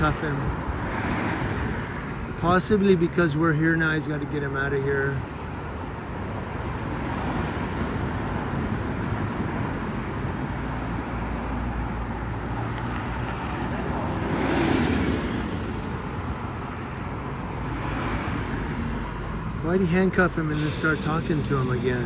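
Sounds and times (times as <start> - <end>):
road traffic rumble: 0.0 - 22.0
car passing close by: 7.0 - 22.0.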